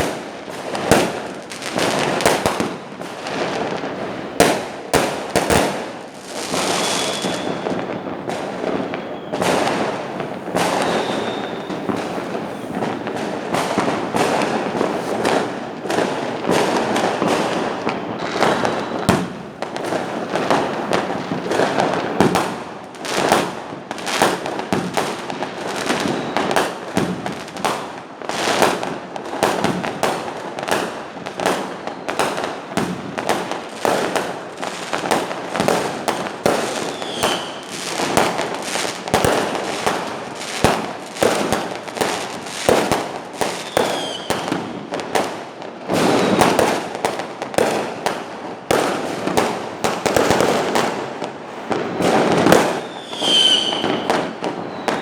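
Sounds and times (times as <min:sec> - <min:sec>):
fireworks bangs and crackles: 0:00.0 - 0:55.0
firework whistles: 0:03.9 - 0:04.8, 0:05.4 - 0:22.5, 0:24.2 - 0:27.2, 0:31.5 - 0:33.0, 0:36.4 - 0:40.1, 0:42.7 - 0:44.8, 0:45.9 - 0:46.8, 0:51.5 - 0:55.0.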